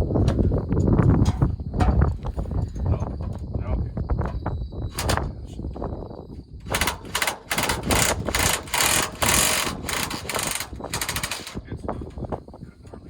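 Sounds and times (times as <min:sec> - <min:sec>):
air impact wrench rattling: 0:06.6 - 0:12.3.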